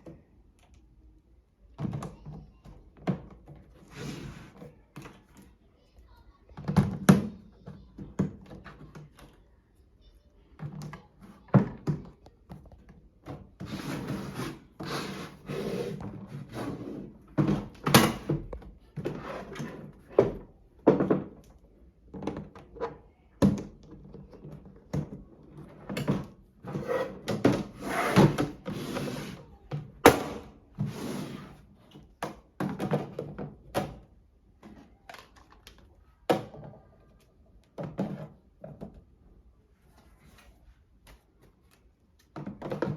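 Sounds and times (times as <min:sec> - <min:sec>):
plastic toy parts knocking and clicking: 0:31.9 - 0:36.8.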